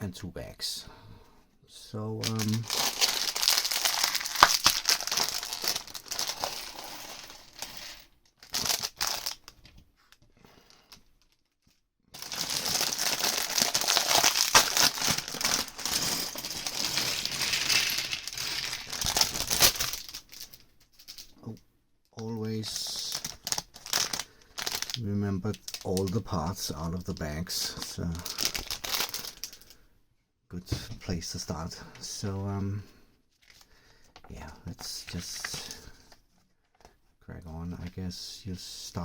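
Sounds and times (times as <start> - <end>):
plastic bags crinkling: 2.2 - 21.3, 22.6 - 29.8.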